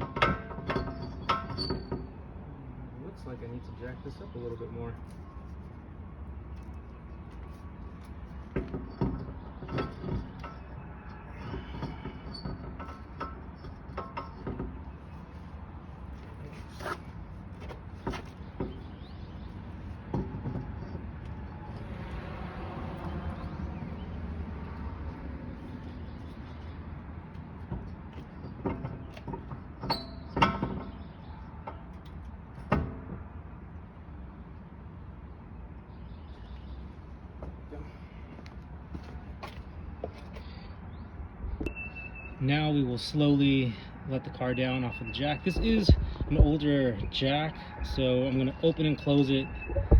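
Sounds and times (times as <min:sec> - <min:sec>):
car jack metal clanks and clicks: 0:00.0 - 0:02.2, 0:08.5 - 0:10.8, 0:11.4 - 0:14.9, 0:18.0 - 0:21.6, 0:27.6 - 0:33.3
metal clinks of tools and lug nuts: 0:00.0 - 0:02.2.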